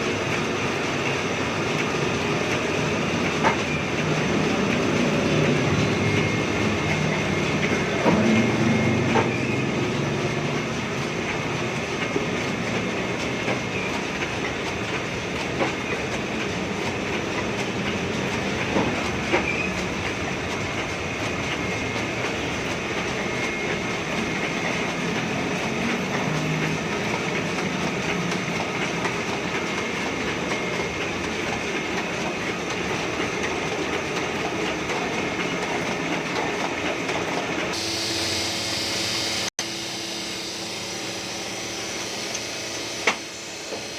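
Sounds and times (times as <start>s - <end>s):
printing press clattering: 0.0s - 37.8s.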